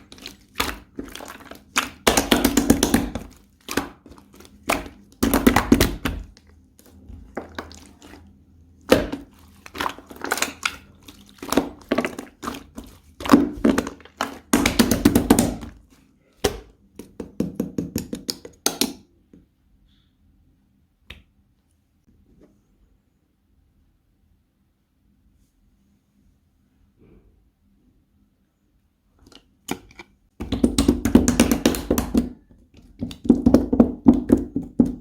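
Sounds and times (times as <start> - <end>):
hands squelching slime: 0.0 - 17.1, 29.7 - 35.0.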